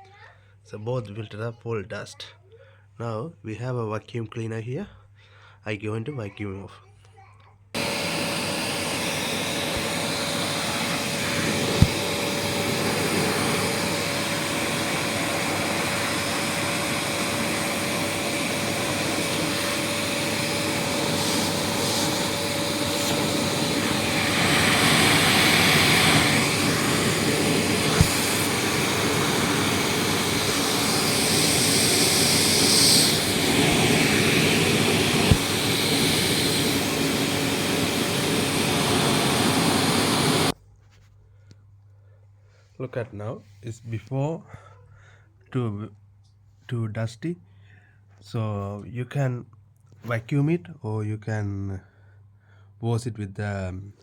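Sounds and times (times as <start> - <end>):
vacuum cleaner running: 7.8 - 40.6.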